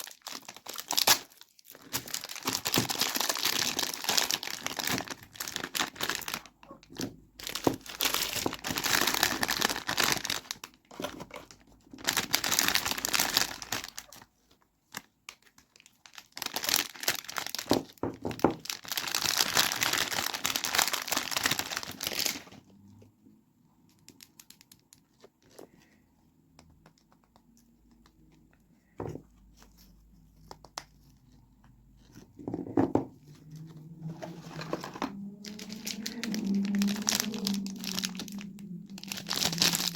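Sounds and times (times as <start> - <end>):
packaging being torn and crinkled: 0.0 - 14.3, 14.9 - 22.6, 33.3 - 39.9.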